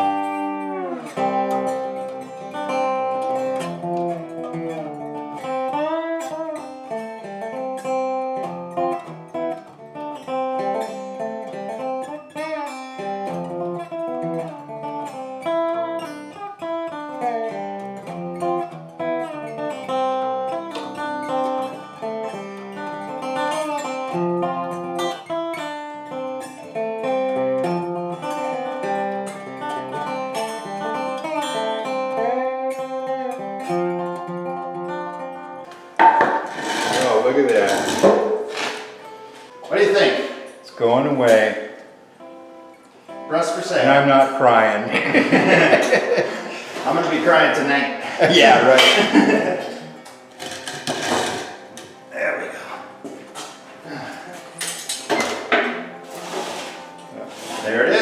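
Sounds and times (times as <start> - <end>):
bluesy slide guitar music: 0.0 - 58.0.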